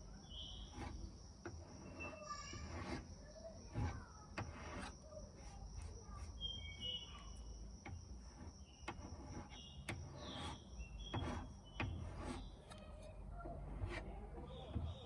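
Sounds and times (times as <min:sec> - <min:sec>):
high bird chirps: 0:00.2 - 0:00.8, 0:06.3 - 0:07.6, 0:09.5 - 0:12.8.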